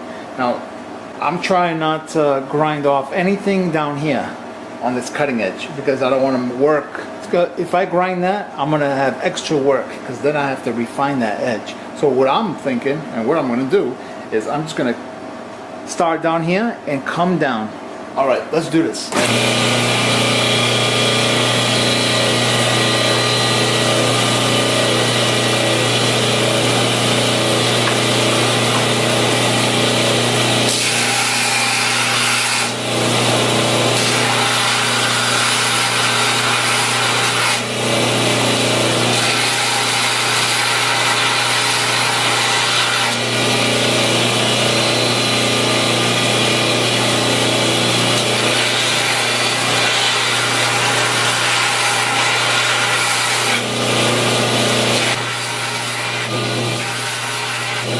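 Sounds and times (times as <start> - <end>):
belt grinder motor hum: 19.1 - 57.9.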